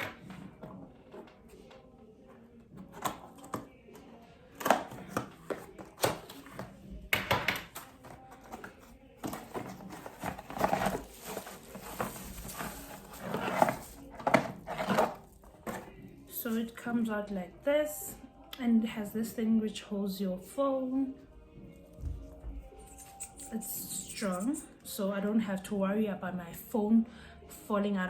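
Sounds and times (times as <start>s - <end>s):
faint music and voices: 0.0s - 28.0s
packaging rustling: 8.2s - 14.1s.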